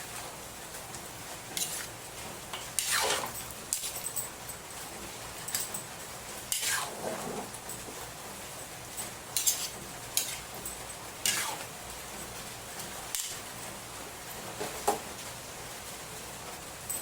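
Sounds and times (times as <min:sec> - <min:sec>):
metal utensil scraping a pan: 0:01.6 - 0:02.0, 0:02.6 - 0:04.0, 0:06.5 - 0:07.5, 0:09.4 - 0:10.6, 0:11.2 - 0:11.7, 0:13.1 - 0:13.5.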